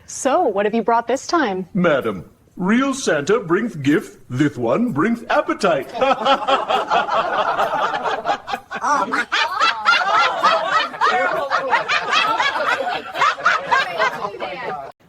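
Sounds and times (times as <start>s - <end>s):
person laughing heartily: 5.8s - 14.7s.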